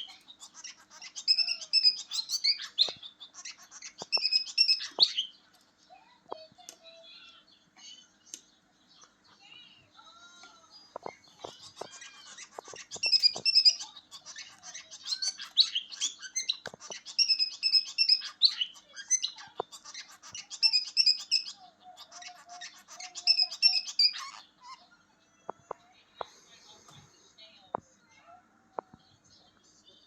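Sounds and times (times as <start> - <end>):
small birds chirping: 0.0 - 30.0.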